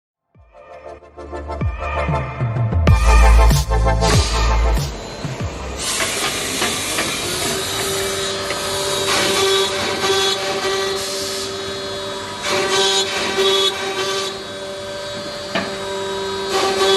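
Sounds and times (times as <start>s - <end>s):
mortising machine whine: 1.2s - 16.9s
mortising machine hiss: 3.4s - 14.3s.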